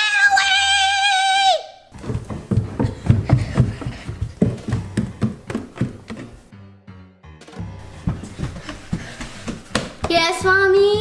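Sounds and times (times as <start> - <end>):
quick footsteps on floor: 1.9 - 6.5, 7.5 - 11.0.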